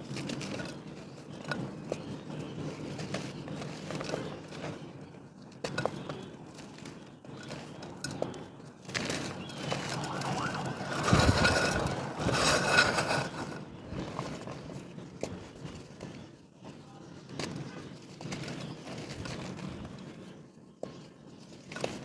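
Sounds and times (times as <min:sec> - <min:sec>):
dry mud crunching: 0:08.9 - 0:14.6.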